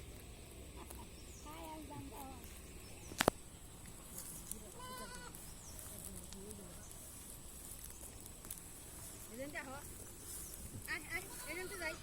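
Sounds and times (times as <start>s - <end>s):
goats bleating: 4.7s - 5.5s, 11.0s - 12.0s.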